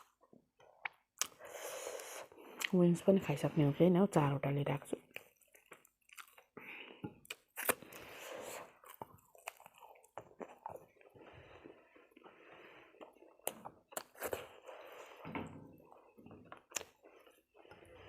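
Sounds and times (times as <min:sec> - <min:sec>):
person chewing chicken wings: 0:05.0 - 0:18.0.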